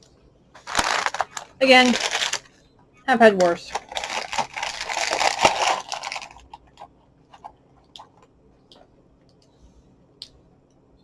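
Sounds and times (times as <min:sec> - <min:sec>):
person crunching cereal: 0:00.6 - 0:02.4, 0:03.4 - 0:06.6.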